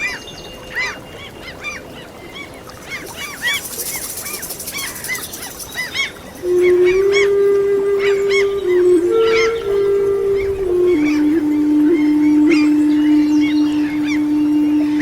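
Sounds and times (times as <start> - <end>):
seagulls calling: 1.6 - 15.0
flute playing long notes: 4.7 - 15.0.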